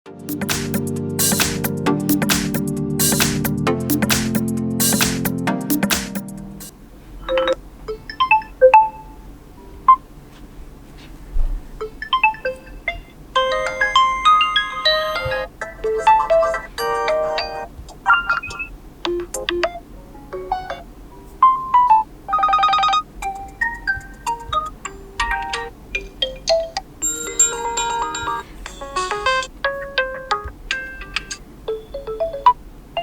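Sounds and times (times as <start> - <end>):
electronic alarm melodies: 13.4 - 15.5, 27.0 - 29.5.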